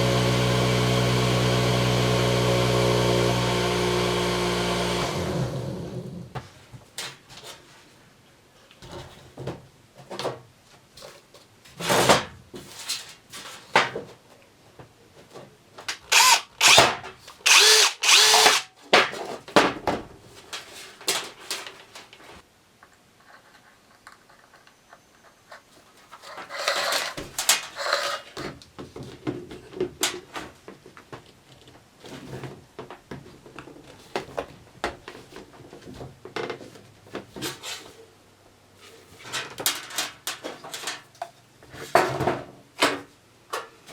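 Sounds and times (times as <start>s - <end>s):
harsh power tool bursts: 0.0s - 6.0s, 16.0s - 18.7s
motor switching off: 0.0s - 6.0s, 16.1s - 16.8s, 17.5s - 18.6s.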